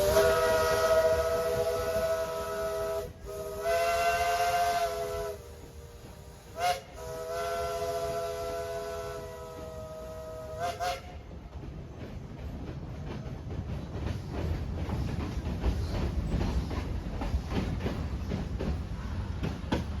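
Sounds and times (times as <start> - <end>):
steam hissing: 0.0 - 11.2
steam locomotive chime whistle: 0.0 - 11.3.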